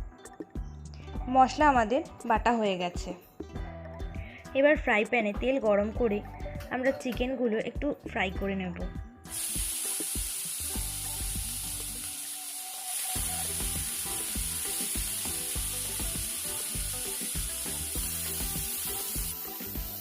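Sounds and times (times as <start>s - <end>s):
chicken frying in hot oil: 9.3s - 20.0s.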